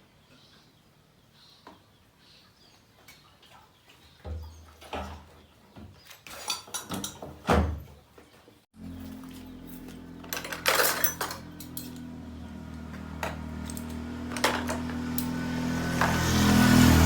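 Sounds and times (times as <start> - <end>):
hand tools clinking on metal: 10.1 - 12.1.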